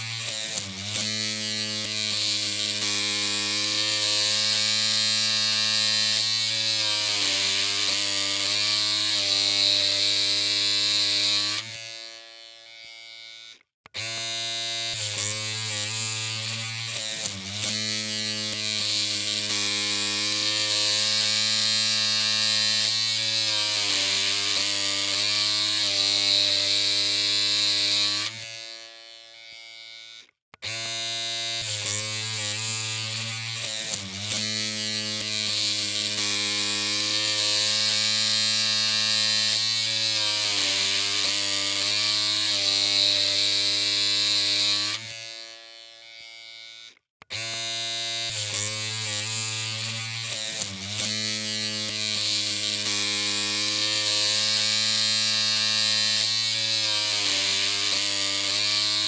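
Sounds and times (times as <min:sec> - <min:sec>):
electric clippers buzzing: 0:00.0 - 0:59.0.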